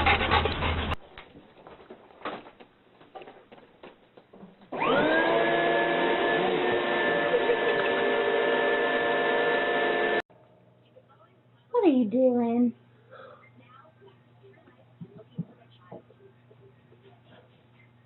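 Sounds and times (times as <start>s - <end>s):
vacuum cleaner motor whining: 4.7s - 10.2s.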